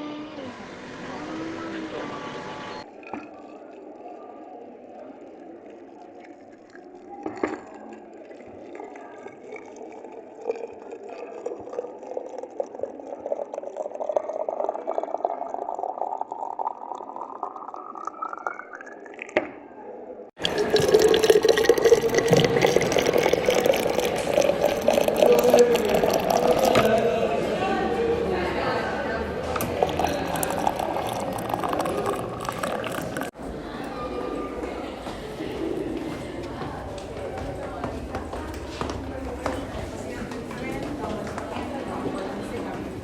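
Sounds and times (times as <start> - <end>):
loud busy din: 0.0 - 3.0, 20.4 - 43.0
water filling a container: 2.8 - 19.5, 20.4 - 27.8, 29.3 - 33.4.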